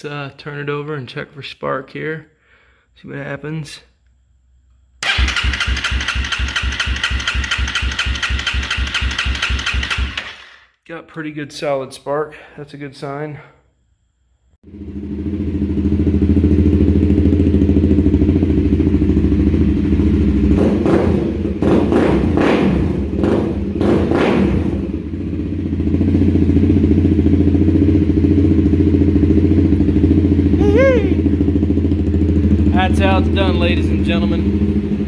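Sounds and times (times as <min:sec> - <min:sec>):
motorcycle engine running: 0:05.1 - 0:10.2, 0:14.6 - 0:35.0.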